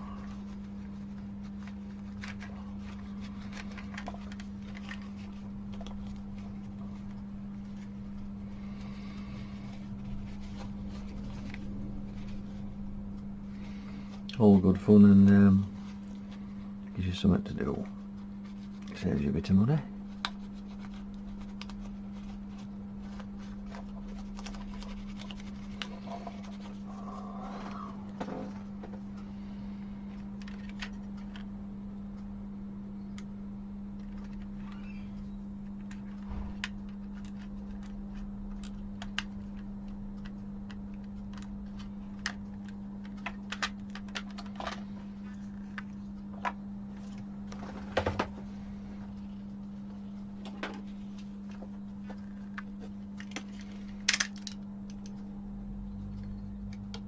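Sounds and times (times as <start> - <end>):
hands rustling and clicking parts: 0.0 - 8.3, 17.5 - 29.3, 30.1 - 31.5, 35.7 - 48.4, 49.0 - 55.3
low electrical hum: 0.0 - 57.0.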